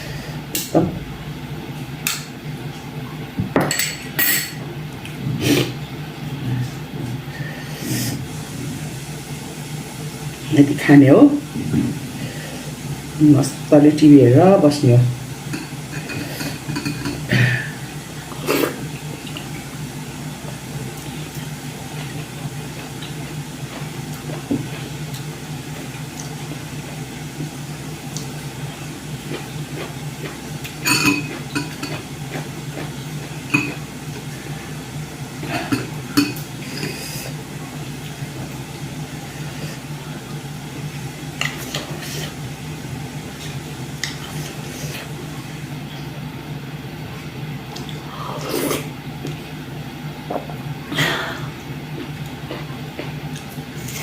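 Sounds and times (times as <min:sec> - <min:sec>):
steady low hum: 0:00.0 - 0:54.0
plate and utensils clinking: 0:30.8 - 0:32.0.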